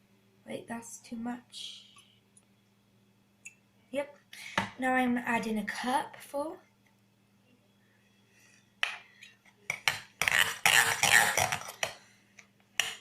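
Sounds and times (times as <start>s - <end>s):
spoon scraping mixing bowl: 9.0s - 12.0s.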